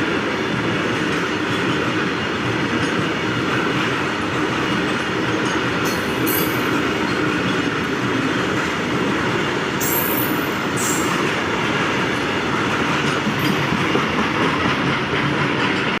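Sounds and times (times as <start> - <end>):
freight train rolling on rails: 0.0 - 16.0
wheel squeals: 5.9 - 6.8, 9.8 - 11.2.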